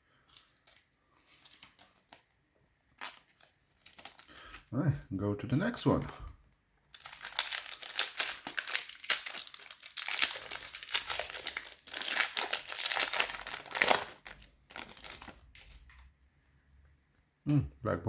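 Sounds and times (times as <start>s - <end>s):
foil wrapper crinkling and tearing: 0.4s - 2.3s, 2.9s - 4.7s, 6.9s - 16.1s.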